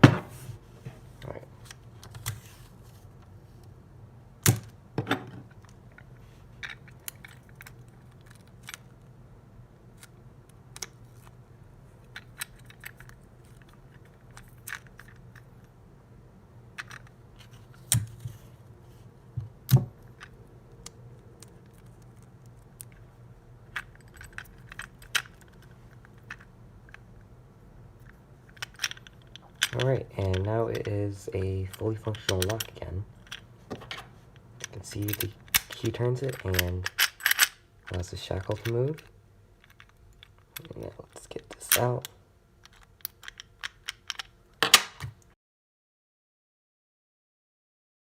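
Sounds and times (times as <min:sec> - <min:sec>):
padlock parts clicking: 0:34.6 - 0:40.8, 0:41.5 - 0:45.0.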